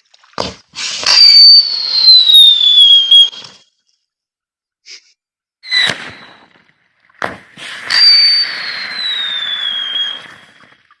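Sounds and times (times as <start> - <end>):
firework crack: 0.4 - 3.6, 5.7 - 10.9
whistling fireworks: 0.8 - 3.7, 5.6 - 11.0.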